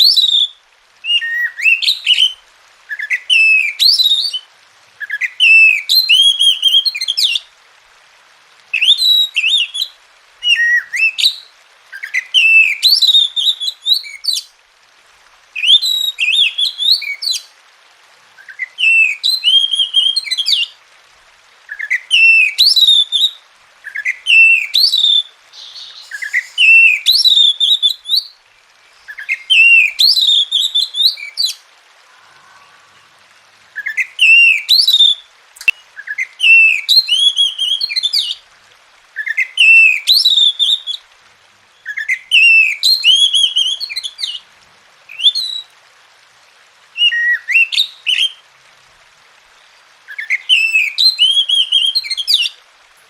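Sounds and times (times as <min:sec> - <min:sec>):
bird singing whistled phrases: 0:00.0 - 0:04.4, 0:05.0 - 0:07.4, 0:08.8 - 0:14.5, 0:15.6 - 0:17.5, 0:18.4 - 0:20.7, 0:21.7 - 0:33.2, 0:33.8 - 0:38.4, 0:39.2 - 0:41.0, 0:41.8 - 0:44.4, 0:45.1 - 0:45.7, 0:47.0 - 0:48.4, 0:50.1 - 0:52.5.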